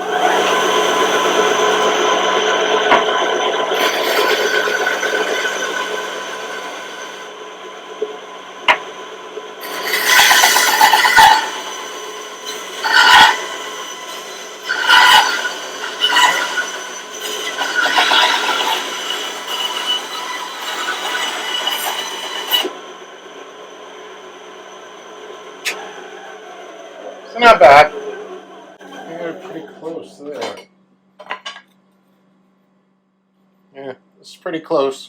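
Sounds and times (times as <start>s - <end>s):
bandsaw humming: 0.0s - 23.8s
saw blade rasping through wood: 9.6s - 22.7s.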